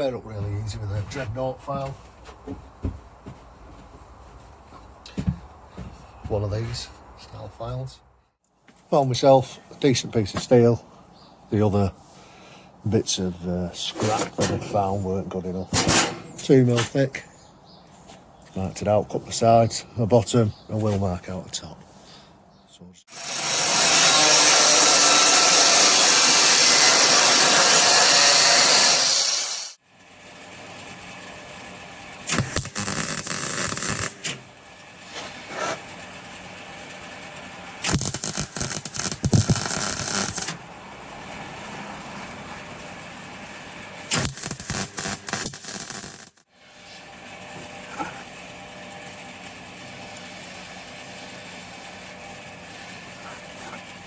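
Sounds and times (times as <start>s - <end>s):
power tool cutting steel: 23.1s - 29.8s, 32.2s - 34.5s, 37.8s - 40.6s, 44.0s - 46.5s.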